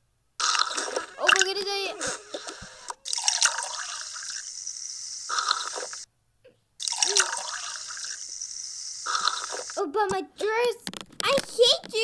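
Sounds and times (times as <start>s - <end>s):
water running and splashing: 3.0s - 6.0s, 6.8s - 9.8s.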